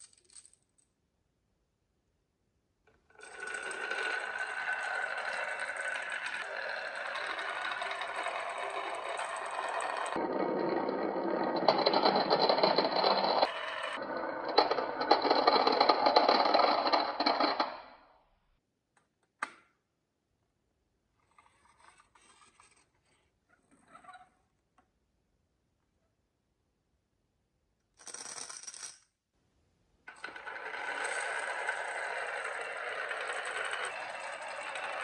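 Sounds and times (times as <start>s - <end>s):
marbles rattling down a track: 3.2s - 17.8s, 30.1s - 35.0s.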